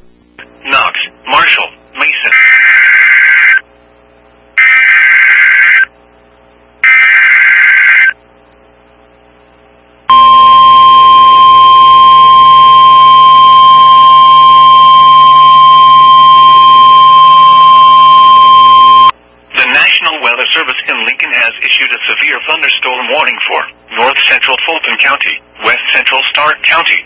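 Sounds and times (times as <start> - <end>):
steady warning alarm tone: 4.6 - 5.9, 6.8 - 8.2, 10.1 - 19.1.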